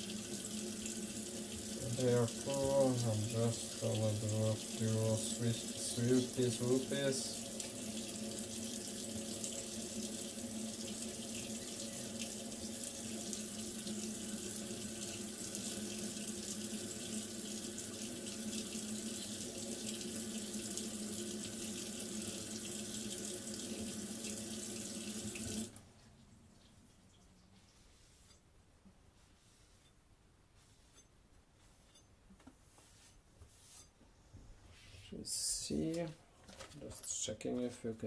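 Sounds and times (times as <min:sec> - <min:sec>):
water running from a tap: 0:00.0 - 0:25.8.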